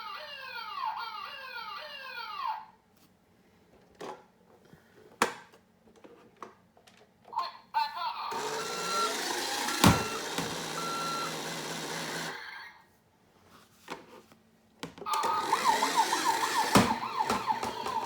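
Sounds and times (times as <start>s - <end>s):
toy electronic sound effect: 8.3s - 12.8s, 15.1s - 18.0s
toy clicks: 15.1s - 18.0s
yelp siren: 15.2s - 18.0s.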